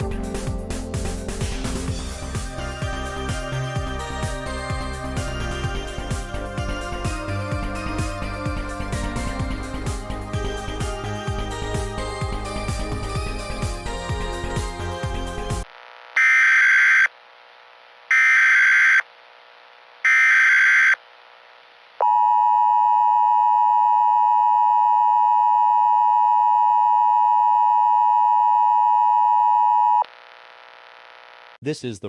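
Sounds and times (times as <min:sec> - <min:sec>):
screechy digital data tones: 0:16.2 - 0:17.1, 0:18.1 - 0:19.0, 0:20.1 - 0:21.0
two-tone attention signal: 0:20.1 - 0:21.0.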